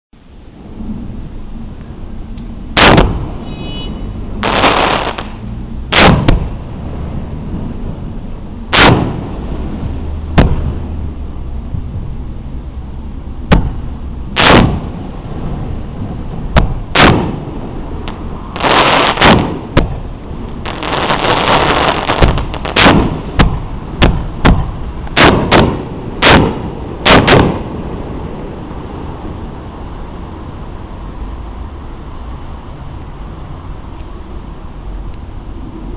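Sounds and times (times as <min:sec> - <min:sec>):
low rumble: 0:00.1 - 0:35.9
fireworks bangs: 0:02.8 - 0:06.7, 0:08.7 - 0:11.0, 0:13.5 - 0:28.5
fireworks crackling: 0:02.8 - 0:06.9, 0:08.5 - 0:11.4, 0:13.5 - 0:29.4.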